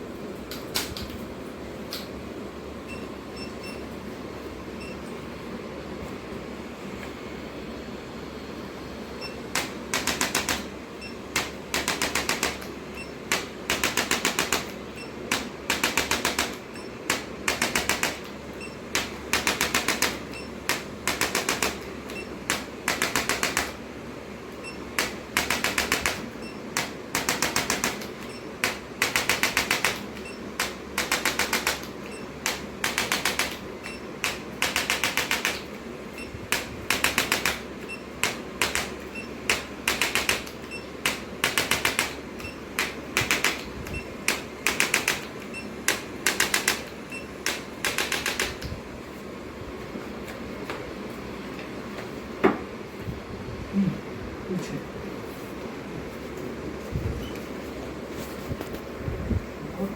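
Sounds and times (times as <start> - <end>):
rapid mechanical tapping: 9.2 - 23.8, 24.9 - 48.8.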